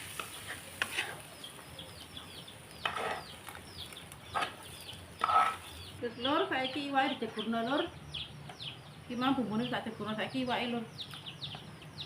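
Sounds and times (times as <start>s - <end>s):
chickens clucking: 0.1s - 6.0s
chicks cheeping: 1.2s - 12.0s.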